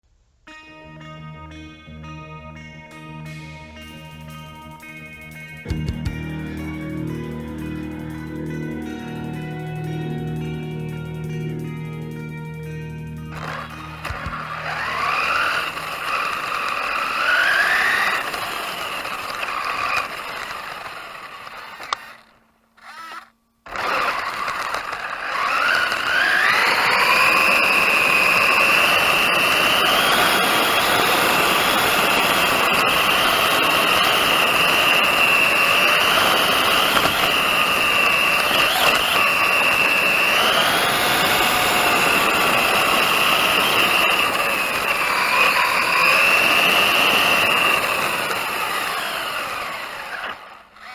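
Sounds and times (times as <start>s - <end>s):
rc car electric motor whining: 13.3s - 50.9s.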